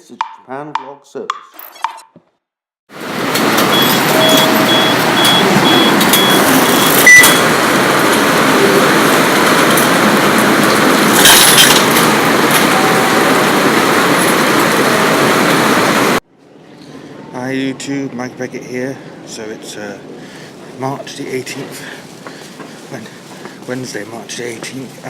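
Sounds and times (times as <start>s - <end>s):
heavy rain pouring: 2.9s - 16.2s, 19.7s - 25.0s
short high beeps: 3.7s - 7.5s.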